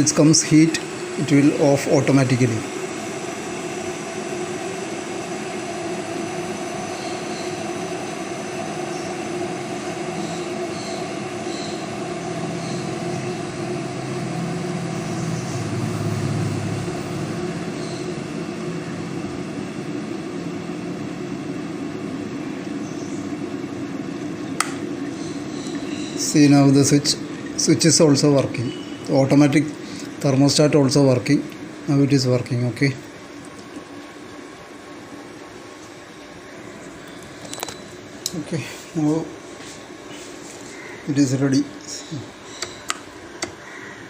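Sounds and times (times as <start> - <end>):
kettle water heating: 0.0 - 44.0.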